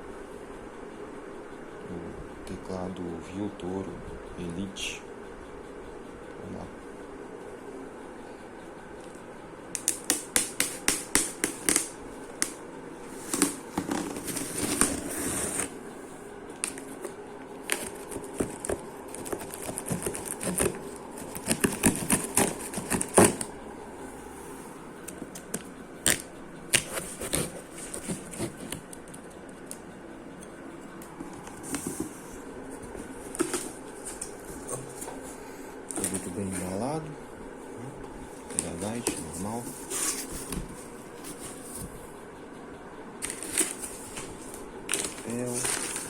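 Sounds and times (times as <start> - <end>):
cardboard packaging handled by hand: 9.8 - 15.8, 16.5 - 23.5, 25.3 - 28.8, 31.2 - 35.2, 38.4 - 42.0, 43.2 - 46.0.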